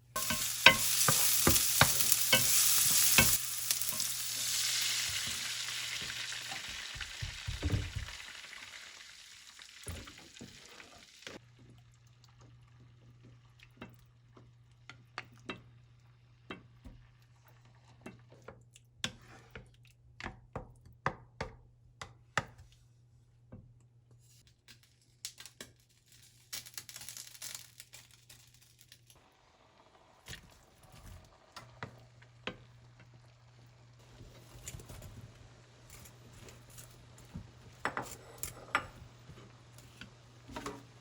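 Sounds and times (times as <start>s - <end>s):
kitchen utensils clicking: 0.2s - 4.2s.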